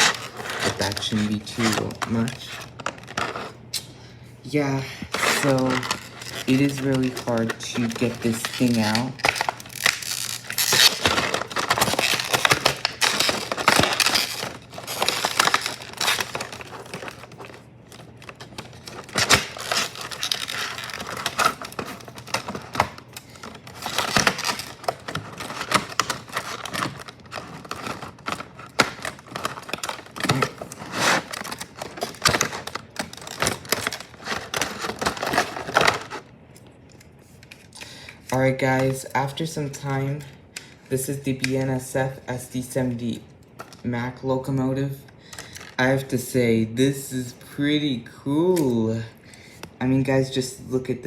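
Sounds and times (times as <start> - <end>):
stiff plastic packaging crinkling: 0.0 - 3.9, 4.6 - 40.0, 45.2 - 46.1.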